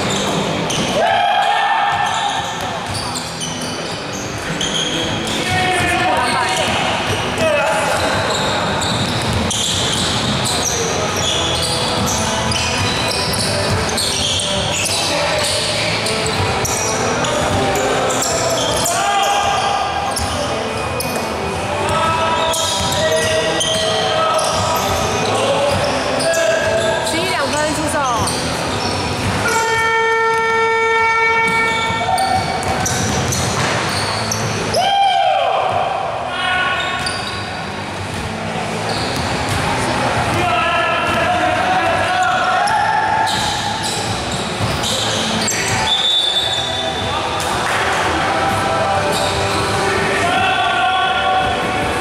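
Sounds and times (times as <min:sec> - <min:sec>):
sneakers squeaking on court: 0:00.0 - 0:01.0, 0:01.8 - 0:34.8, 0:36.7 - 0:40.4, 0:41.0 - 0:50.0
players' voices echoing: 0:00.0 - 0:52.0
basketball bouncing: 0:05.5 - 0:10.5, 0:31.0 - 0:34.4.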